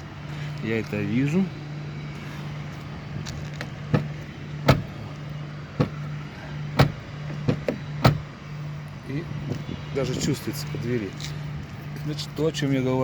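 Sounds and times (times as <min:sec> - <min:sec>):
steady low hum: 0:00.0 - 0:12.5
car door latch clicks and knocks: 0:03.6 - 0:05.0, 0:05.8 - 0:06.1, 0:06.8 - 0:08.3.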